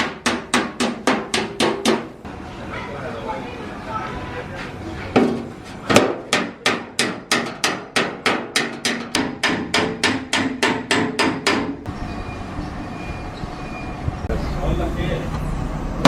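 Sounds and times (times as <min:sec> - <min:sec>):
hammer striking sheet metal: 0:00.0 - 0:02.2, 0:05.1 - 0:11.9.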